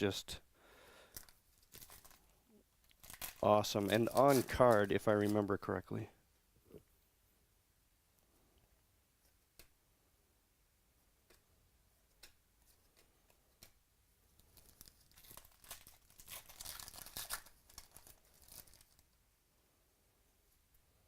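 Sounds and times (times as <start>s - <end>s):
wrapper crinkling: 1.1s - 5.5s, 14.4s - 19.1s
foil pack tearing open: 2.9s - 5.4s, 14.6s - 19.0s.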